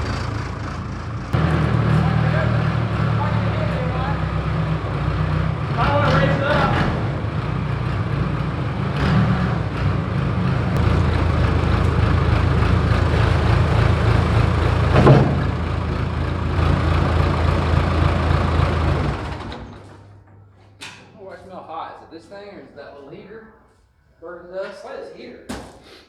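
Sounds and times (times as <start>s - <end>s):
diesel engine running: 0.0s - 20.8s.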